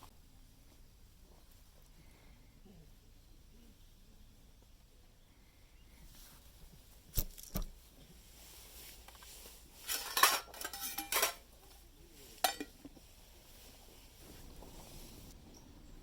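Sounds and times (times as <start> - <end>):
metallic ring: 9.8 - 11.4
metal cookware clinking: 9.8 - 11.5, 12.4 - 12.8.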